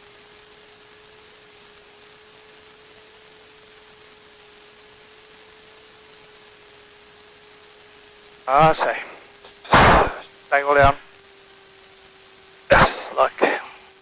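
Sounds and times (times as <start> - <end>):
intercom hiss: 8.5 - 11.1, 12.7 - 13.9.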